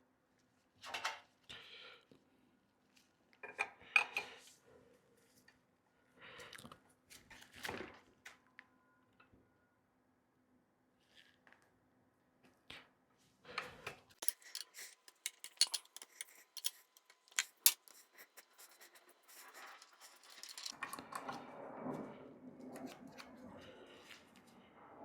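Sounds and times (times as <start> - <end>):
soft rustling and scraping: 14.2 - 20.8
small hard parts clicking: 14.2 - 21.0.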